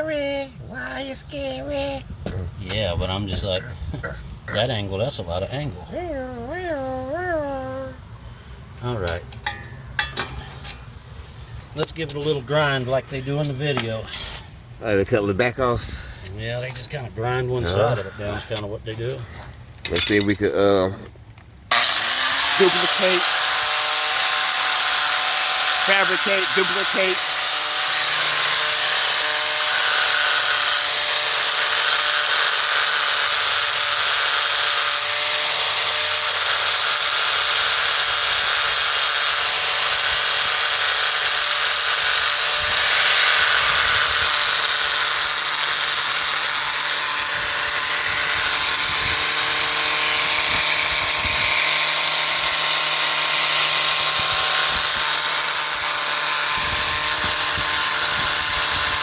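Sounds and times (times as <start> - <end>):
grinder motor whine: 21.7 - 59.0.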